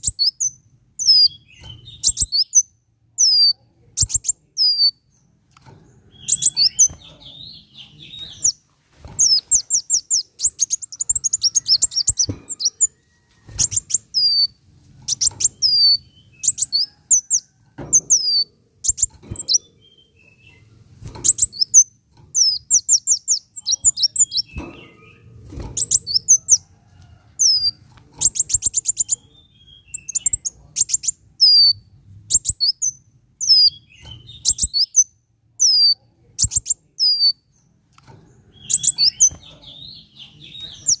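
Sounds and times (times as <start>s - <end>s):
bird high-pitched trills: 9.2s - 20.6s.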